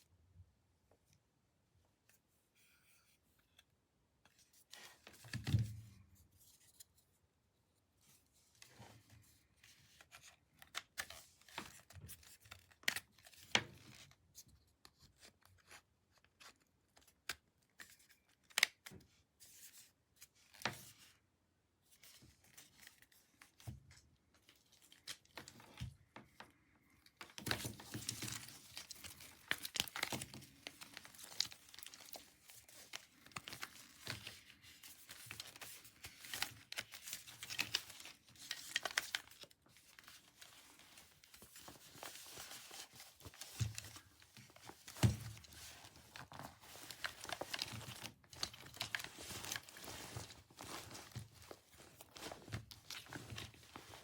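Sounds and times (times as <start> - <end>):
crinkling and tearing rustling: 27.1 - 54.0.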